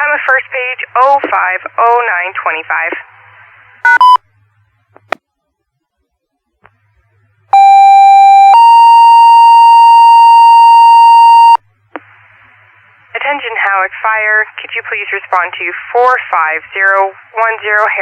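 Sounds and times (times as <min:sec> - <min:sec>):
two-tone radio page: 0:00.0 - 0:04.2, 0:07.5 - 0:18.0.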